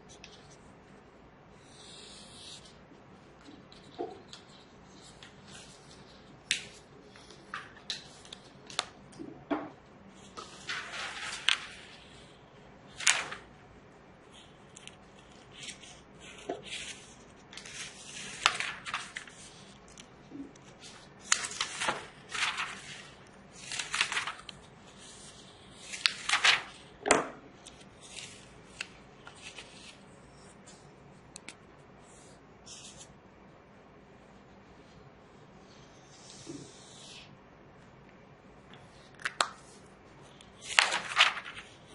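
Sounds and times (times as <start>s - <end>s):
pages rustling: 2.5s - 9.1s, 10.2s - 13.6s, 14.2s - 33.1s, 38.8s - 41.9s.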